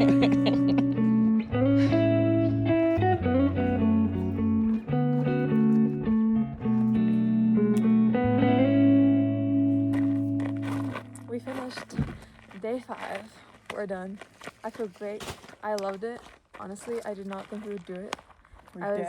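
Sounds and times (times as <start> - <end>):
slow guitar melody: 0.0 - 12.4.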